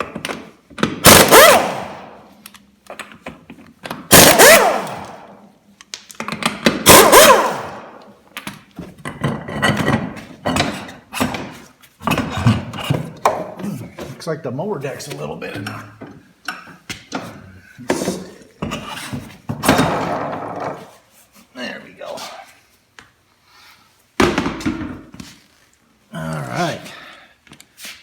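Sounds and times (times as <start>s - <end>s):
impact wrench bursts: 1.0s - 2.2s, 4.1s - 5.4s, 6.7s - 8.0s.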